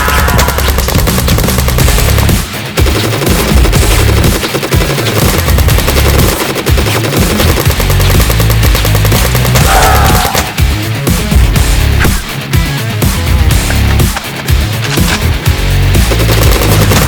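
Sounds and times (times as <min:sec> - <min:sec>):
automatic gunfire: 0:00.0 - 0:10.6, 0:16.0 - 0:17.0
loud driving music: 0:00.0 - 0:17.0.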